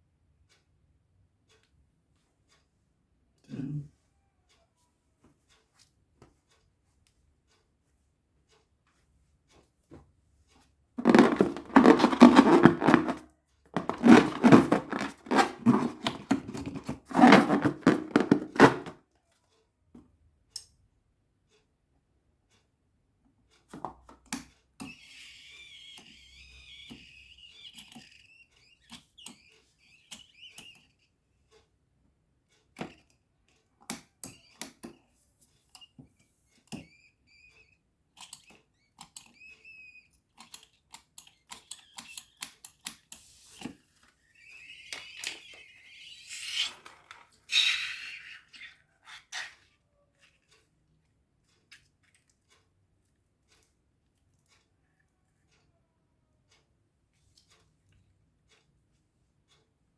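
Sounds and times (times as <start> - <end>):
rubber squeak: 11.0 - 19.0, 24.8 - 31.2, 34.3 - 35.1, 36.8 - 49.7.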